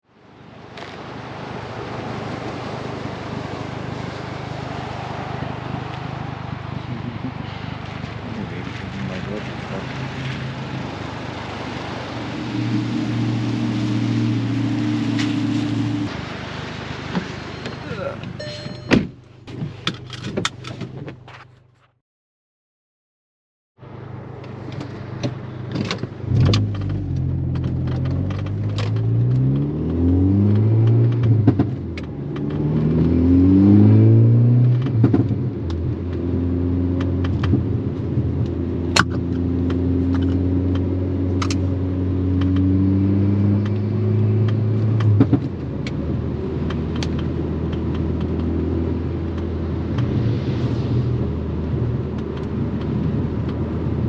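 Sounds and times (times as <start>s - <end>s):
car engine revving and shifting: 9.1s - 18.9s, 24.4s - 54.0s.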